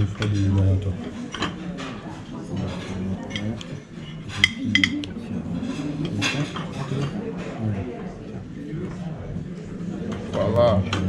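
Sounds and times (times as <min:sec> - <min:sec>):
cutlery clinking on plates: 0:00.1 - 0:07.6.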